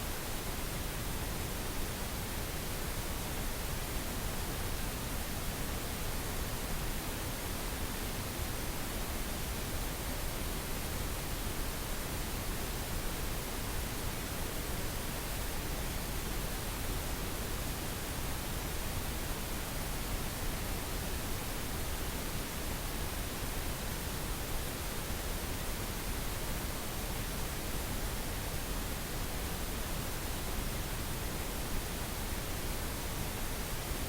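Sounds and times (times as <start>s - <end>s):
pink noise hiss: 0.0s - 34.0s.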